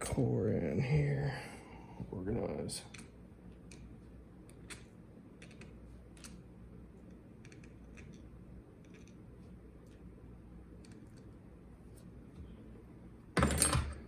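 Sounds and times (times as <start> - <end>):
low background hum: 0.0 - 14.0
small lock parts clicking: 7.4 - 9.2.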